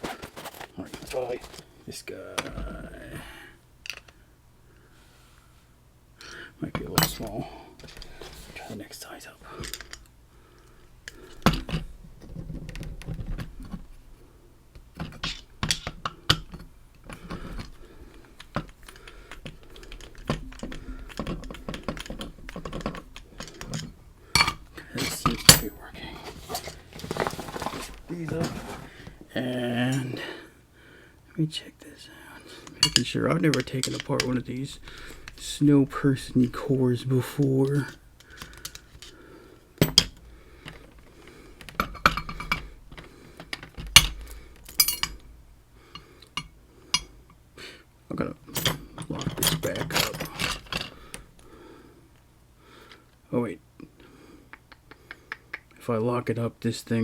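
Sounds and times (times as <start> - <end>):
metal lock parts clicking: 18.4 - 25.7, 32.6 - 34.4, 43.4 - 45.2.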